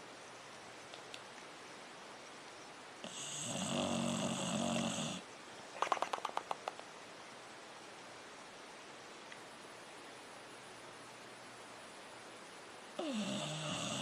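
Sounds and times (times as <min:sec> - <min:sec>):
dog snoring: 0:03.0 - 0:05.2, 0:13.0 - 0:14.0
quick run of clicks: 0:05.8 - 0:06.9.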